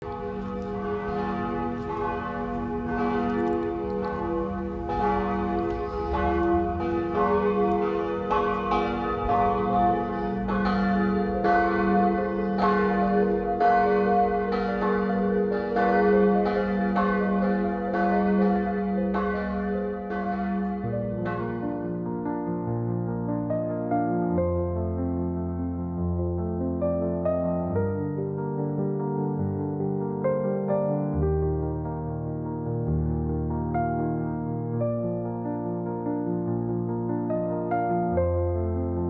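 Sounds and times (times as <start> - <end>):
church bells pealing: 0.0 - 22.2.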